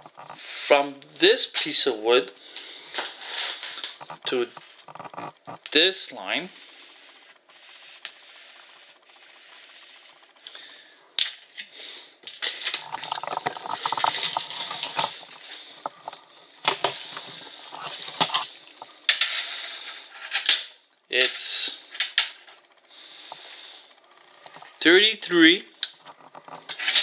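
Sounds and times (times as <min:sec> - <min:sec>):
scraping and rustling: 0:02.5 - 0:05.7, 0:06.3 - 0:11.0, 0:12.3 - 0:20.6, 0:25.7 - 0:27.0.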